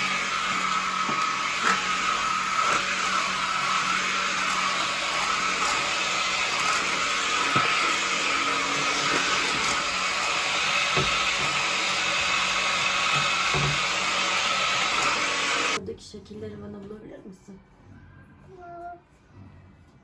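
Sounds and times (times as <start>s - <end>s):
vacuum cleaner motor running: 0.0s - 15.8s.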